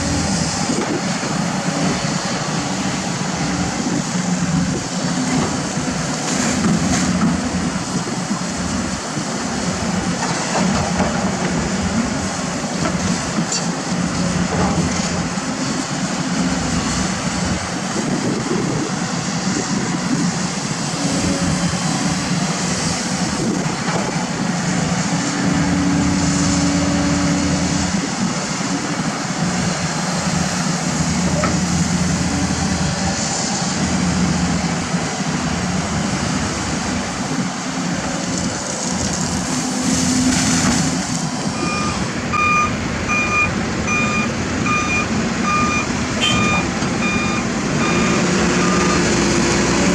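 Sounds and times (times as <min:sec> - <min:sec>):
heavy machinery diesel engines: 0:00.0 - 0:49.9.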